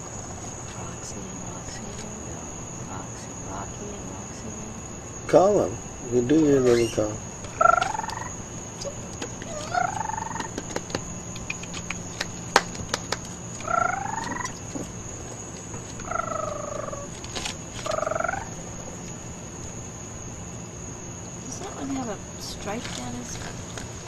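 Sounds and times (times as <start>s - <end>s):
high-pitched insect-like drone: 0.0s - 20.3s
animal trilling calls: 6.3s - 11.6s, 13.6s - 14.9s, 16.0s - 17.1s, 17.8s - 18.8s.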